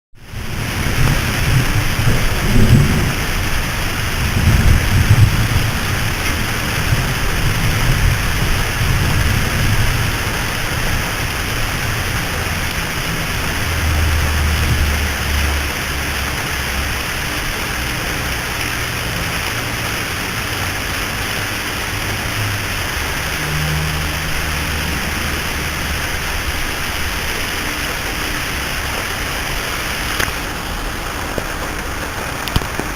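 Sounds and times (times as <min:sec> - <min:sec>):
heavy rain hissing: 0:00.2 - 0:32.9
low thunder rumbling: 0:00.4 - 0:18.2.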